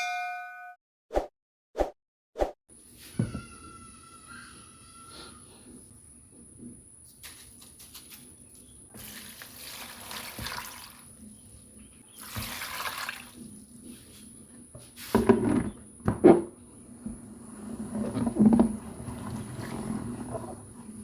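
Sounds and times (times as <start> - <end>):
water pouring: 9.0 - 11.2, 12.2 - 13.7.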